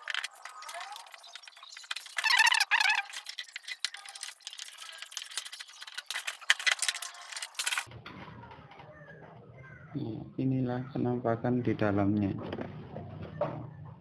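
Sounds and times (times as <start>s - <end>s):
screws and plastic cover rattling: 0.0s - 7.9s.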